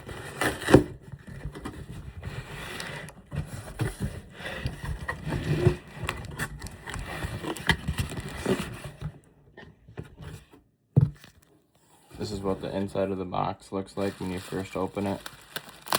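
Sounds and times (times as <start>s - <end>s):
cardboard box being cut open: 0.1s - 1.0s.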